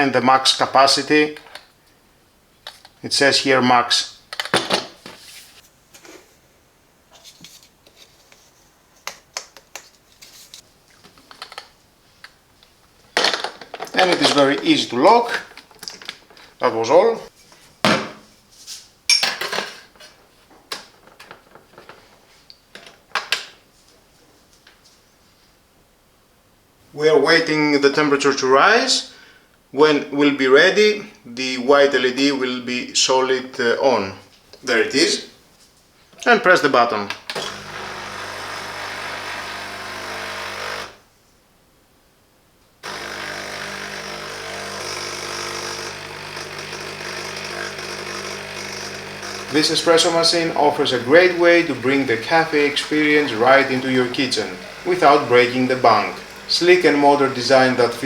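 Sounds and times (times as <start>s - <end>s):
espresso machine pump buzzing: 37.4s - 41.0s, 42.8s - 58.0s.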